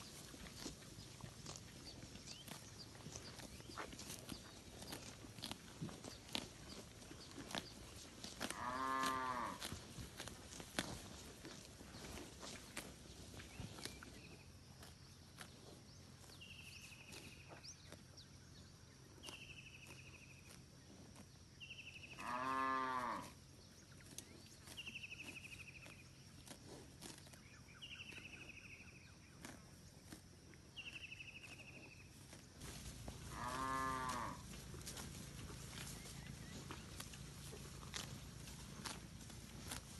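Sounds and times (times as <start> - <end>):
cattle mooing: 8.5 - 9.6, 22.2 - 23.3, 33.2 - 34.5.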